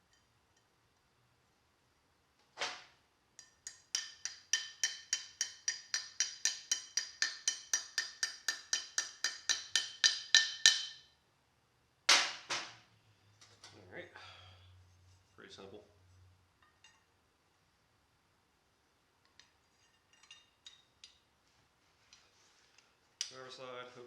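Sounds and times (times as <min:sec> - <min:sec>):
hammer tapping on steel: 0:03.4 - 0:11.1.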